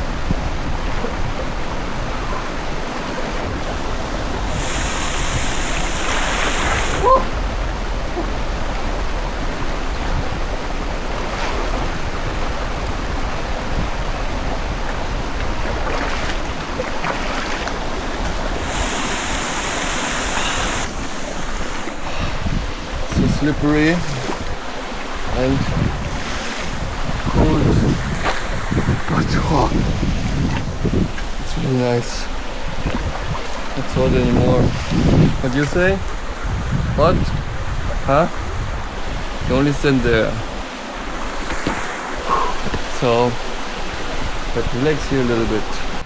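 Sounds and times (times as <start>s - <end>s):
river water rushing: 0.0s - 46.0s.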